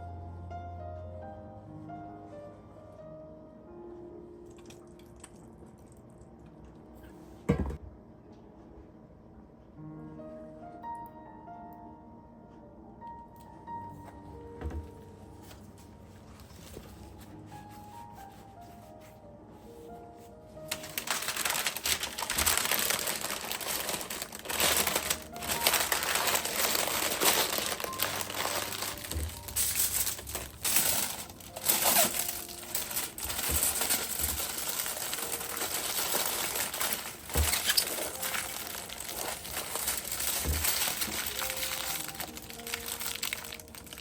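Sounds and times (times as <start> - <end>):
faint background music: 0.0 - 44.0
crinkling and rustling: 13.9 - 44.0.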